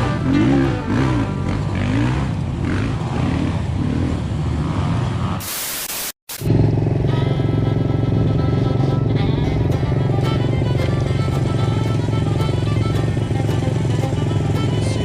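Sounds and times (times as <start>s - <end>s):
motorcycle engine revving: 0.0s - 5.5s, 6.3s - 15.0s
loud hiss burst: 5.4s - 6.5s.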